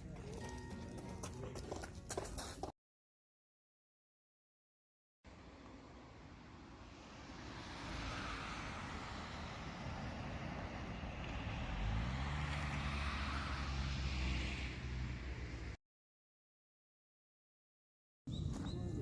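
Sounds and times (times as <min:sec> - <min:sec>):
vehicle engine passing: 0:05.3 - 0:15.8.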